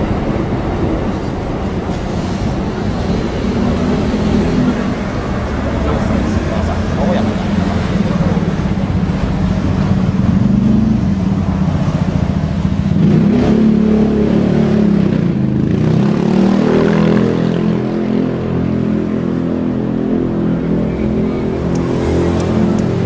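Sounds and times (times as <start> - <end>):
vehicle engine running: 0.0 - 23.0.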